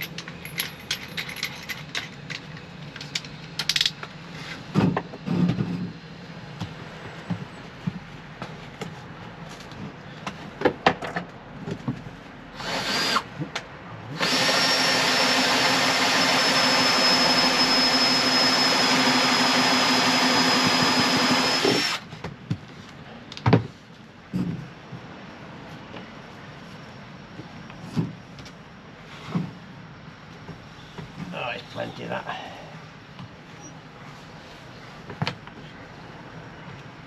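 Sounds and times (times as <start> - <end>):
power tool whining: 12.6 - 13.2, 14.2 - 22.1.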